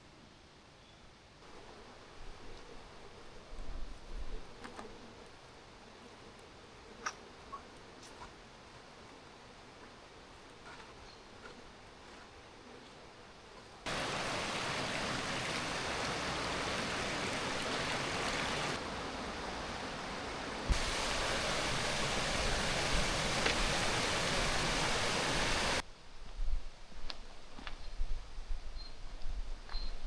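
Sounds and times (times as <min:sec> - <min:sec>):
faint ambience: 0:13.9 - 0:25.8
waterfall rushing: 0:13.9 - 0:25.8.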